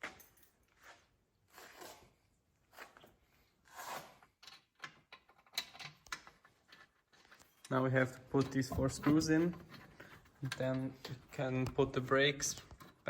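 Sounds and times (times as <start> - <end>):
soft scrapes of metal parts: 6.4 - 11.6.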